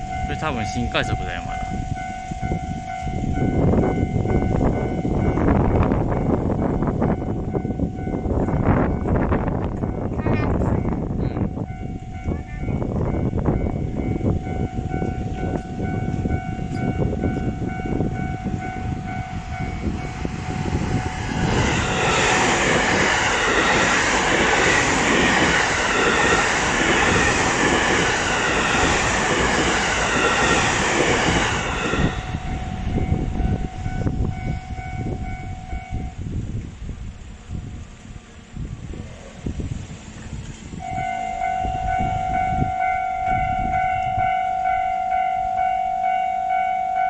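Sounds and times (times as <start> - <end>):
train wheels rushing on rails: 0.0 - 45.9
train rumbling over rails: 0.0 - 47.0
level crossing bell ringing: 40.8 - 47.0.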